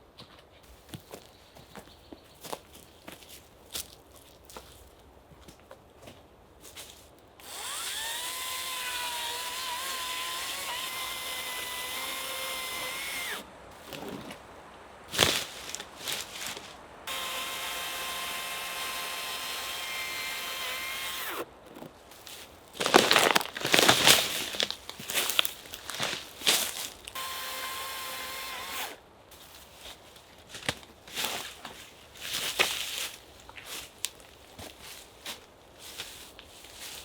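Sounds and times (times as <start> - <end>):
power drill running: 7.4 - 13.4, 17.1 - 21.5, 27.1 - 29.0.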